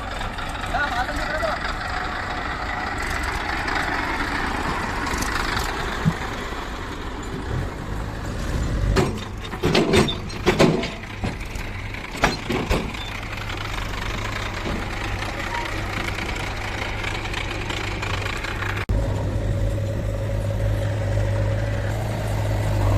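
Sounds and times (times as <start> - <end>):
diesel engine running: 0.0 - 22.9
thuds and clanks: 6.0 - 6.3, 8.8 - 13.2.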